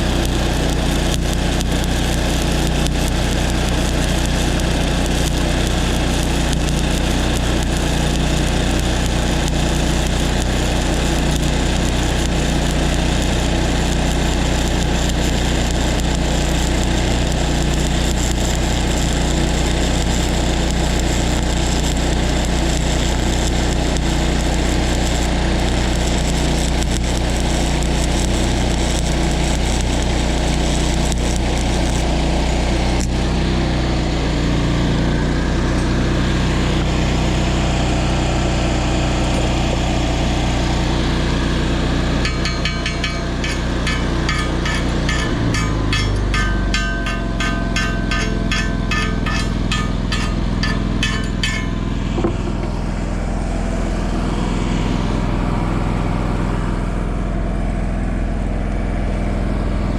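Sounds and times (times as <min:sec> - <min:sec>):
welding arc hissing crackle: 0:00.0 - 0:33.4, 0:39.2 - 0:53.2
welding machine engine running: 0:00.0 - 0:59.9.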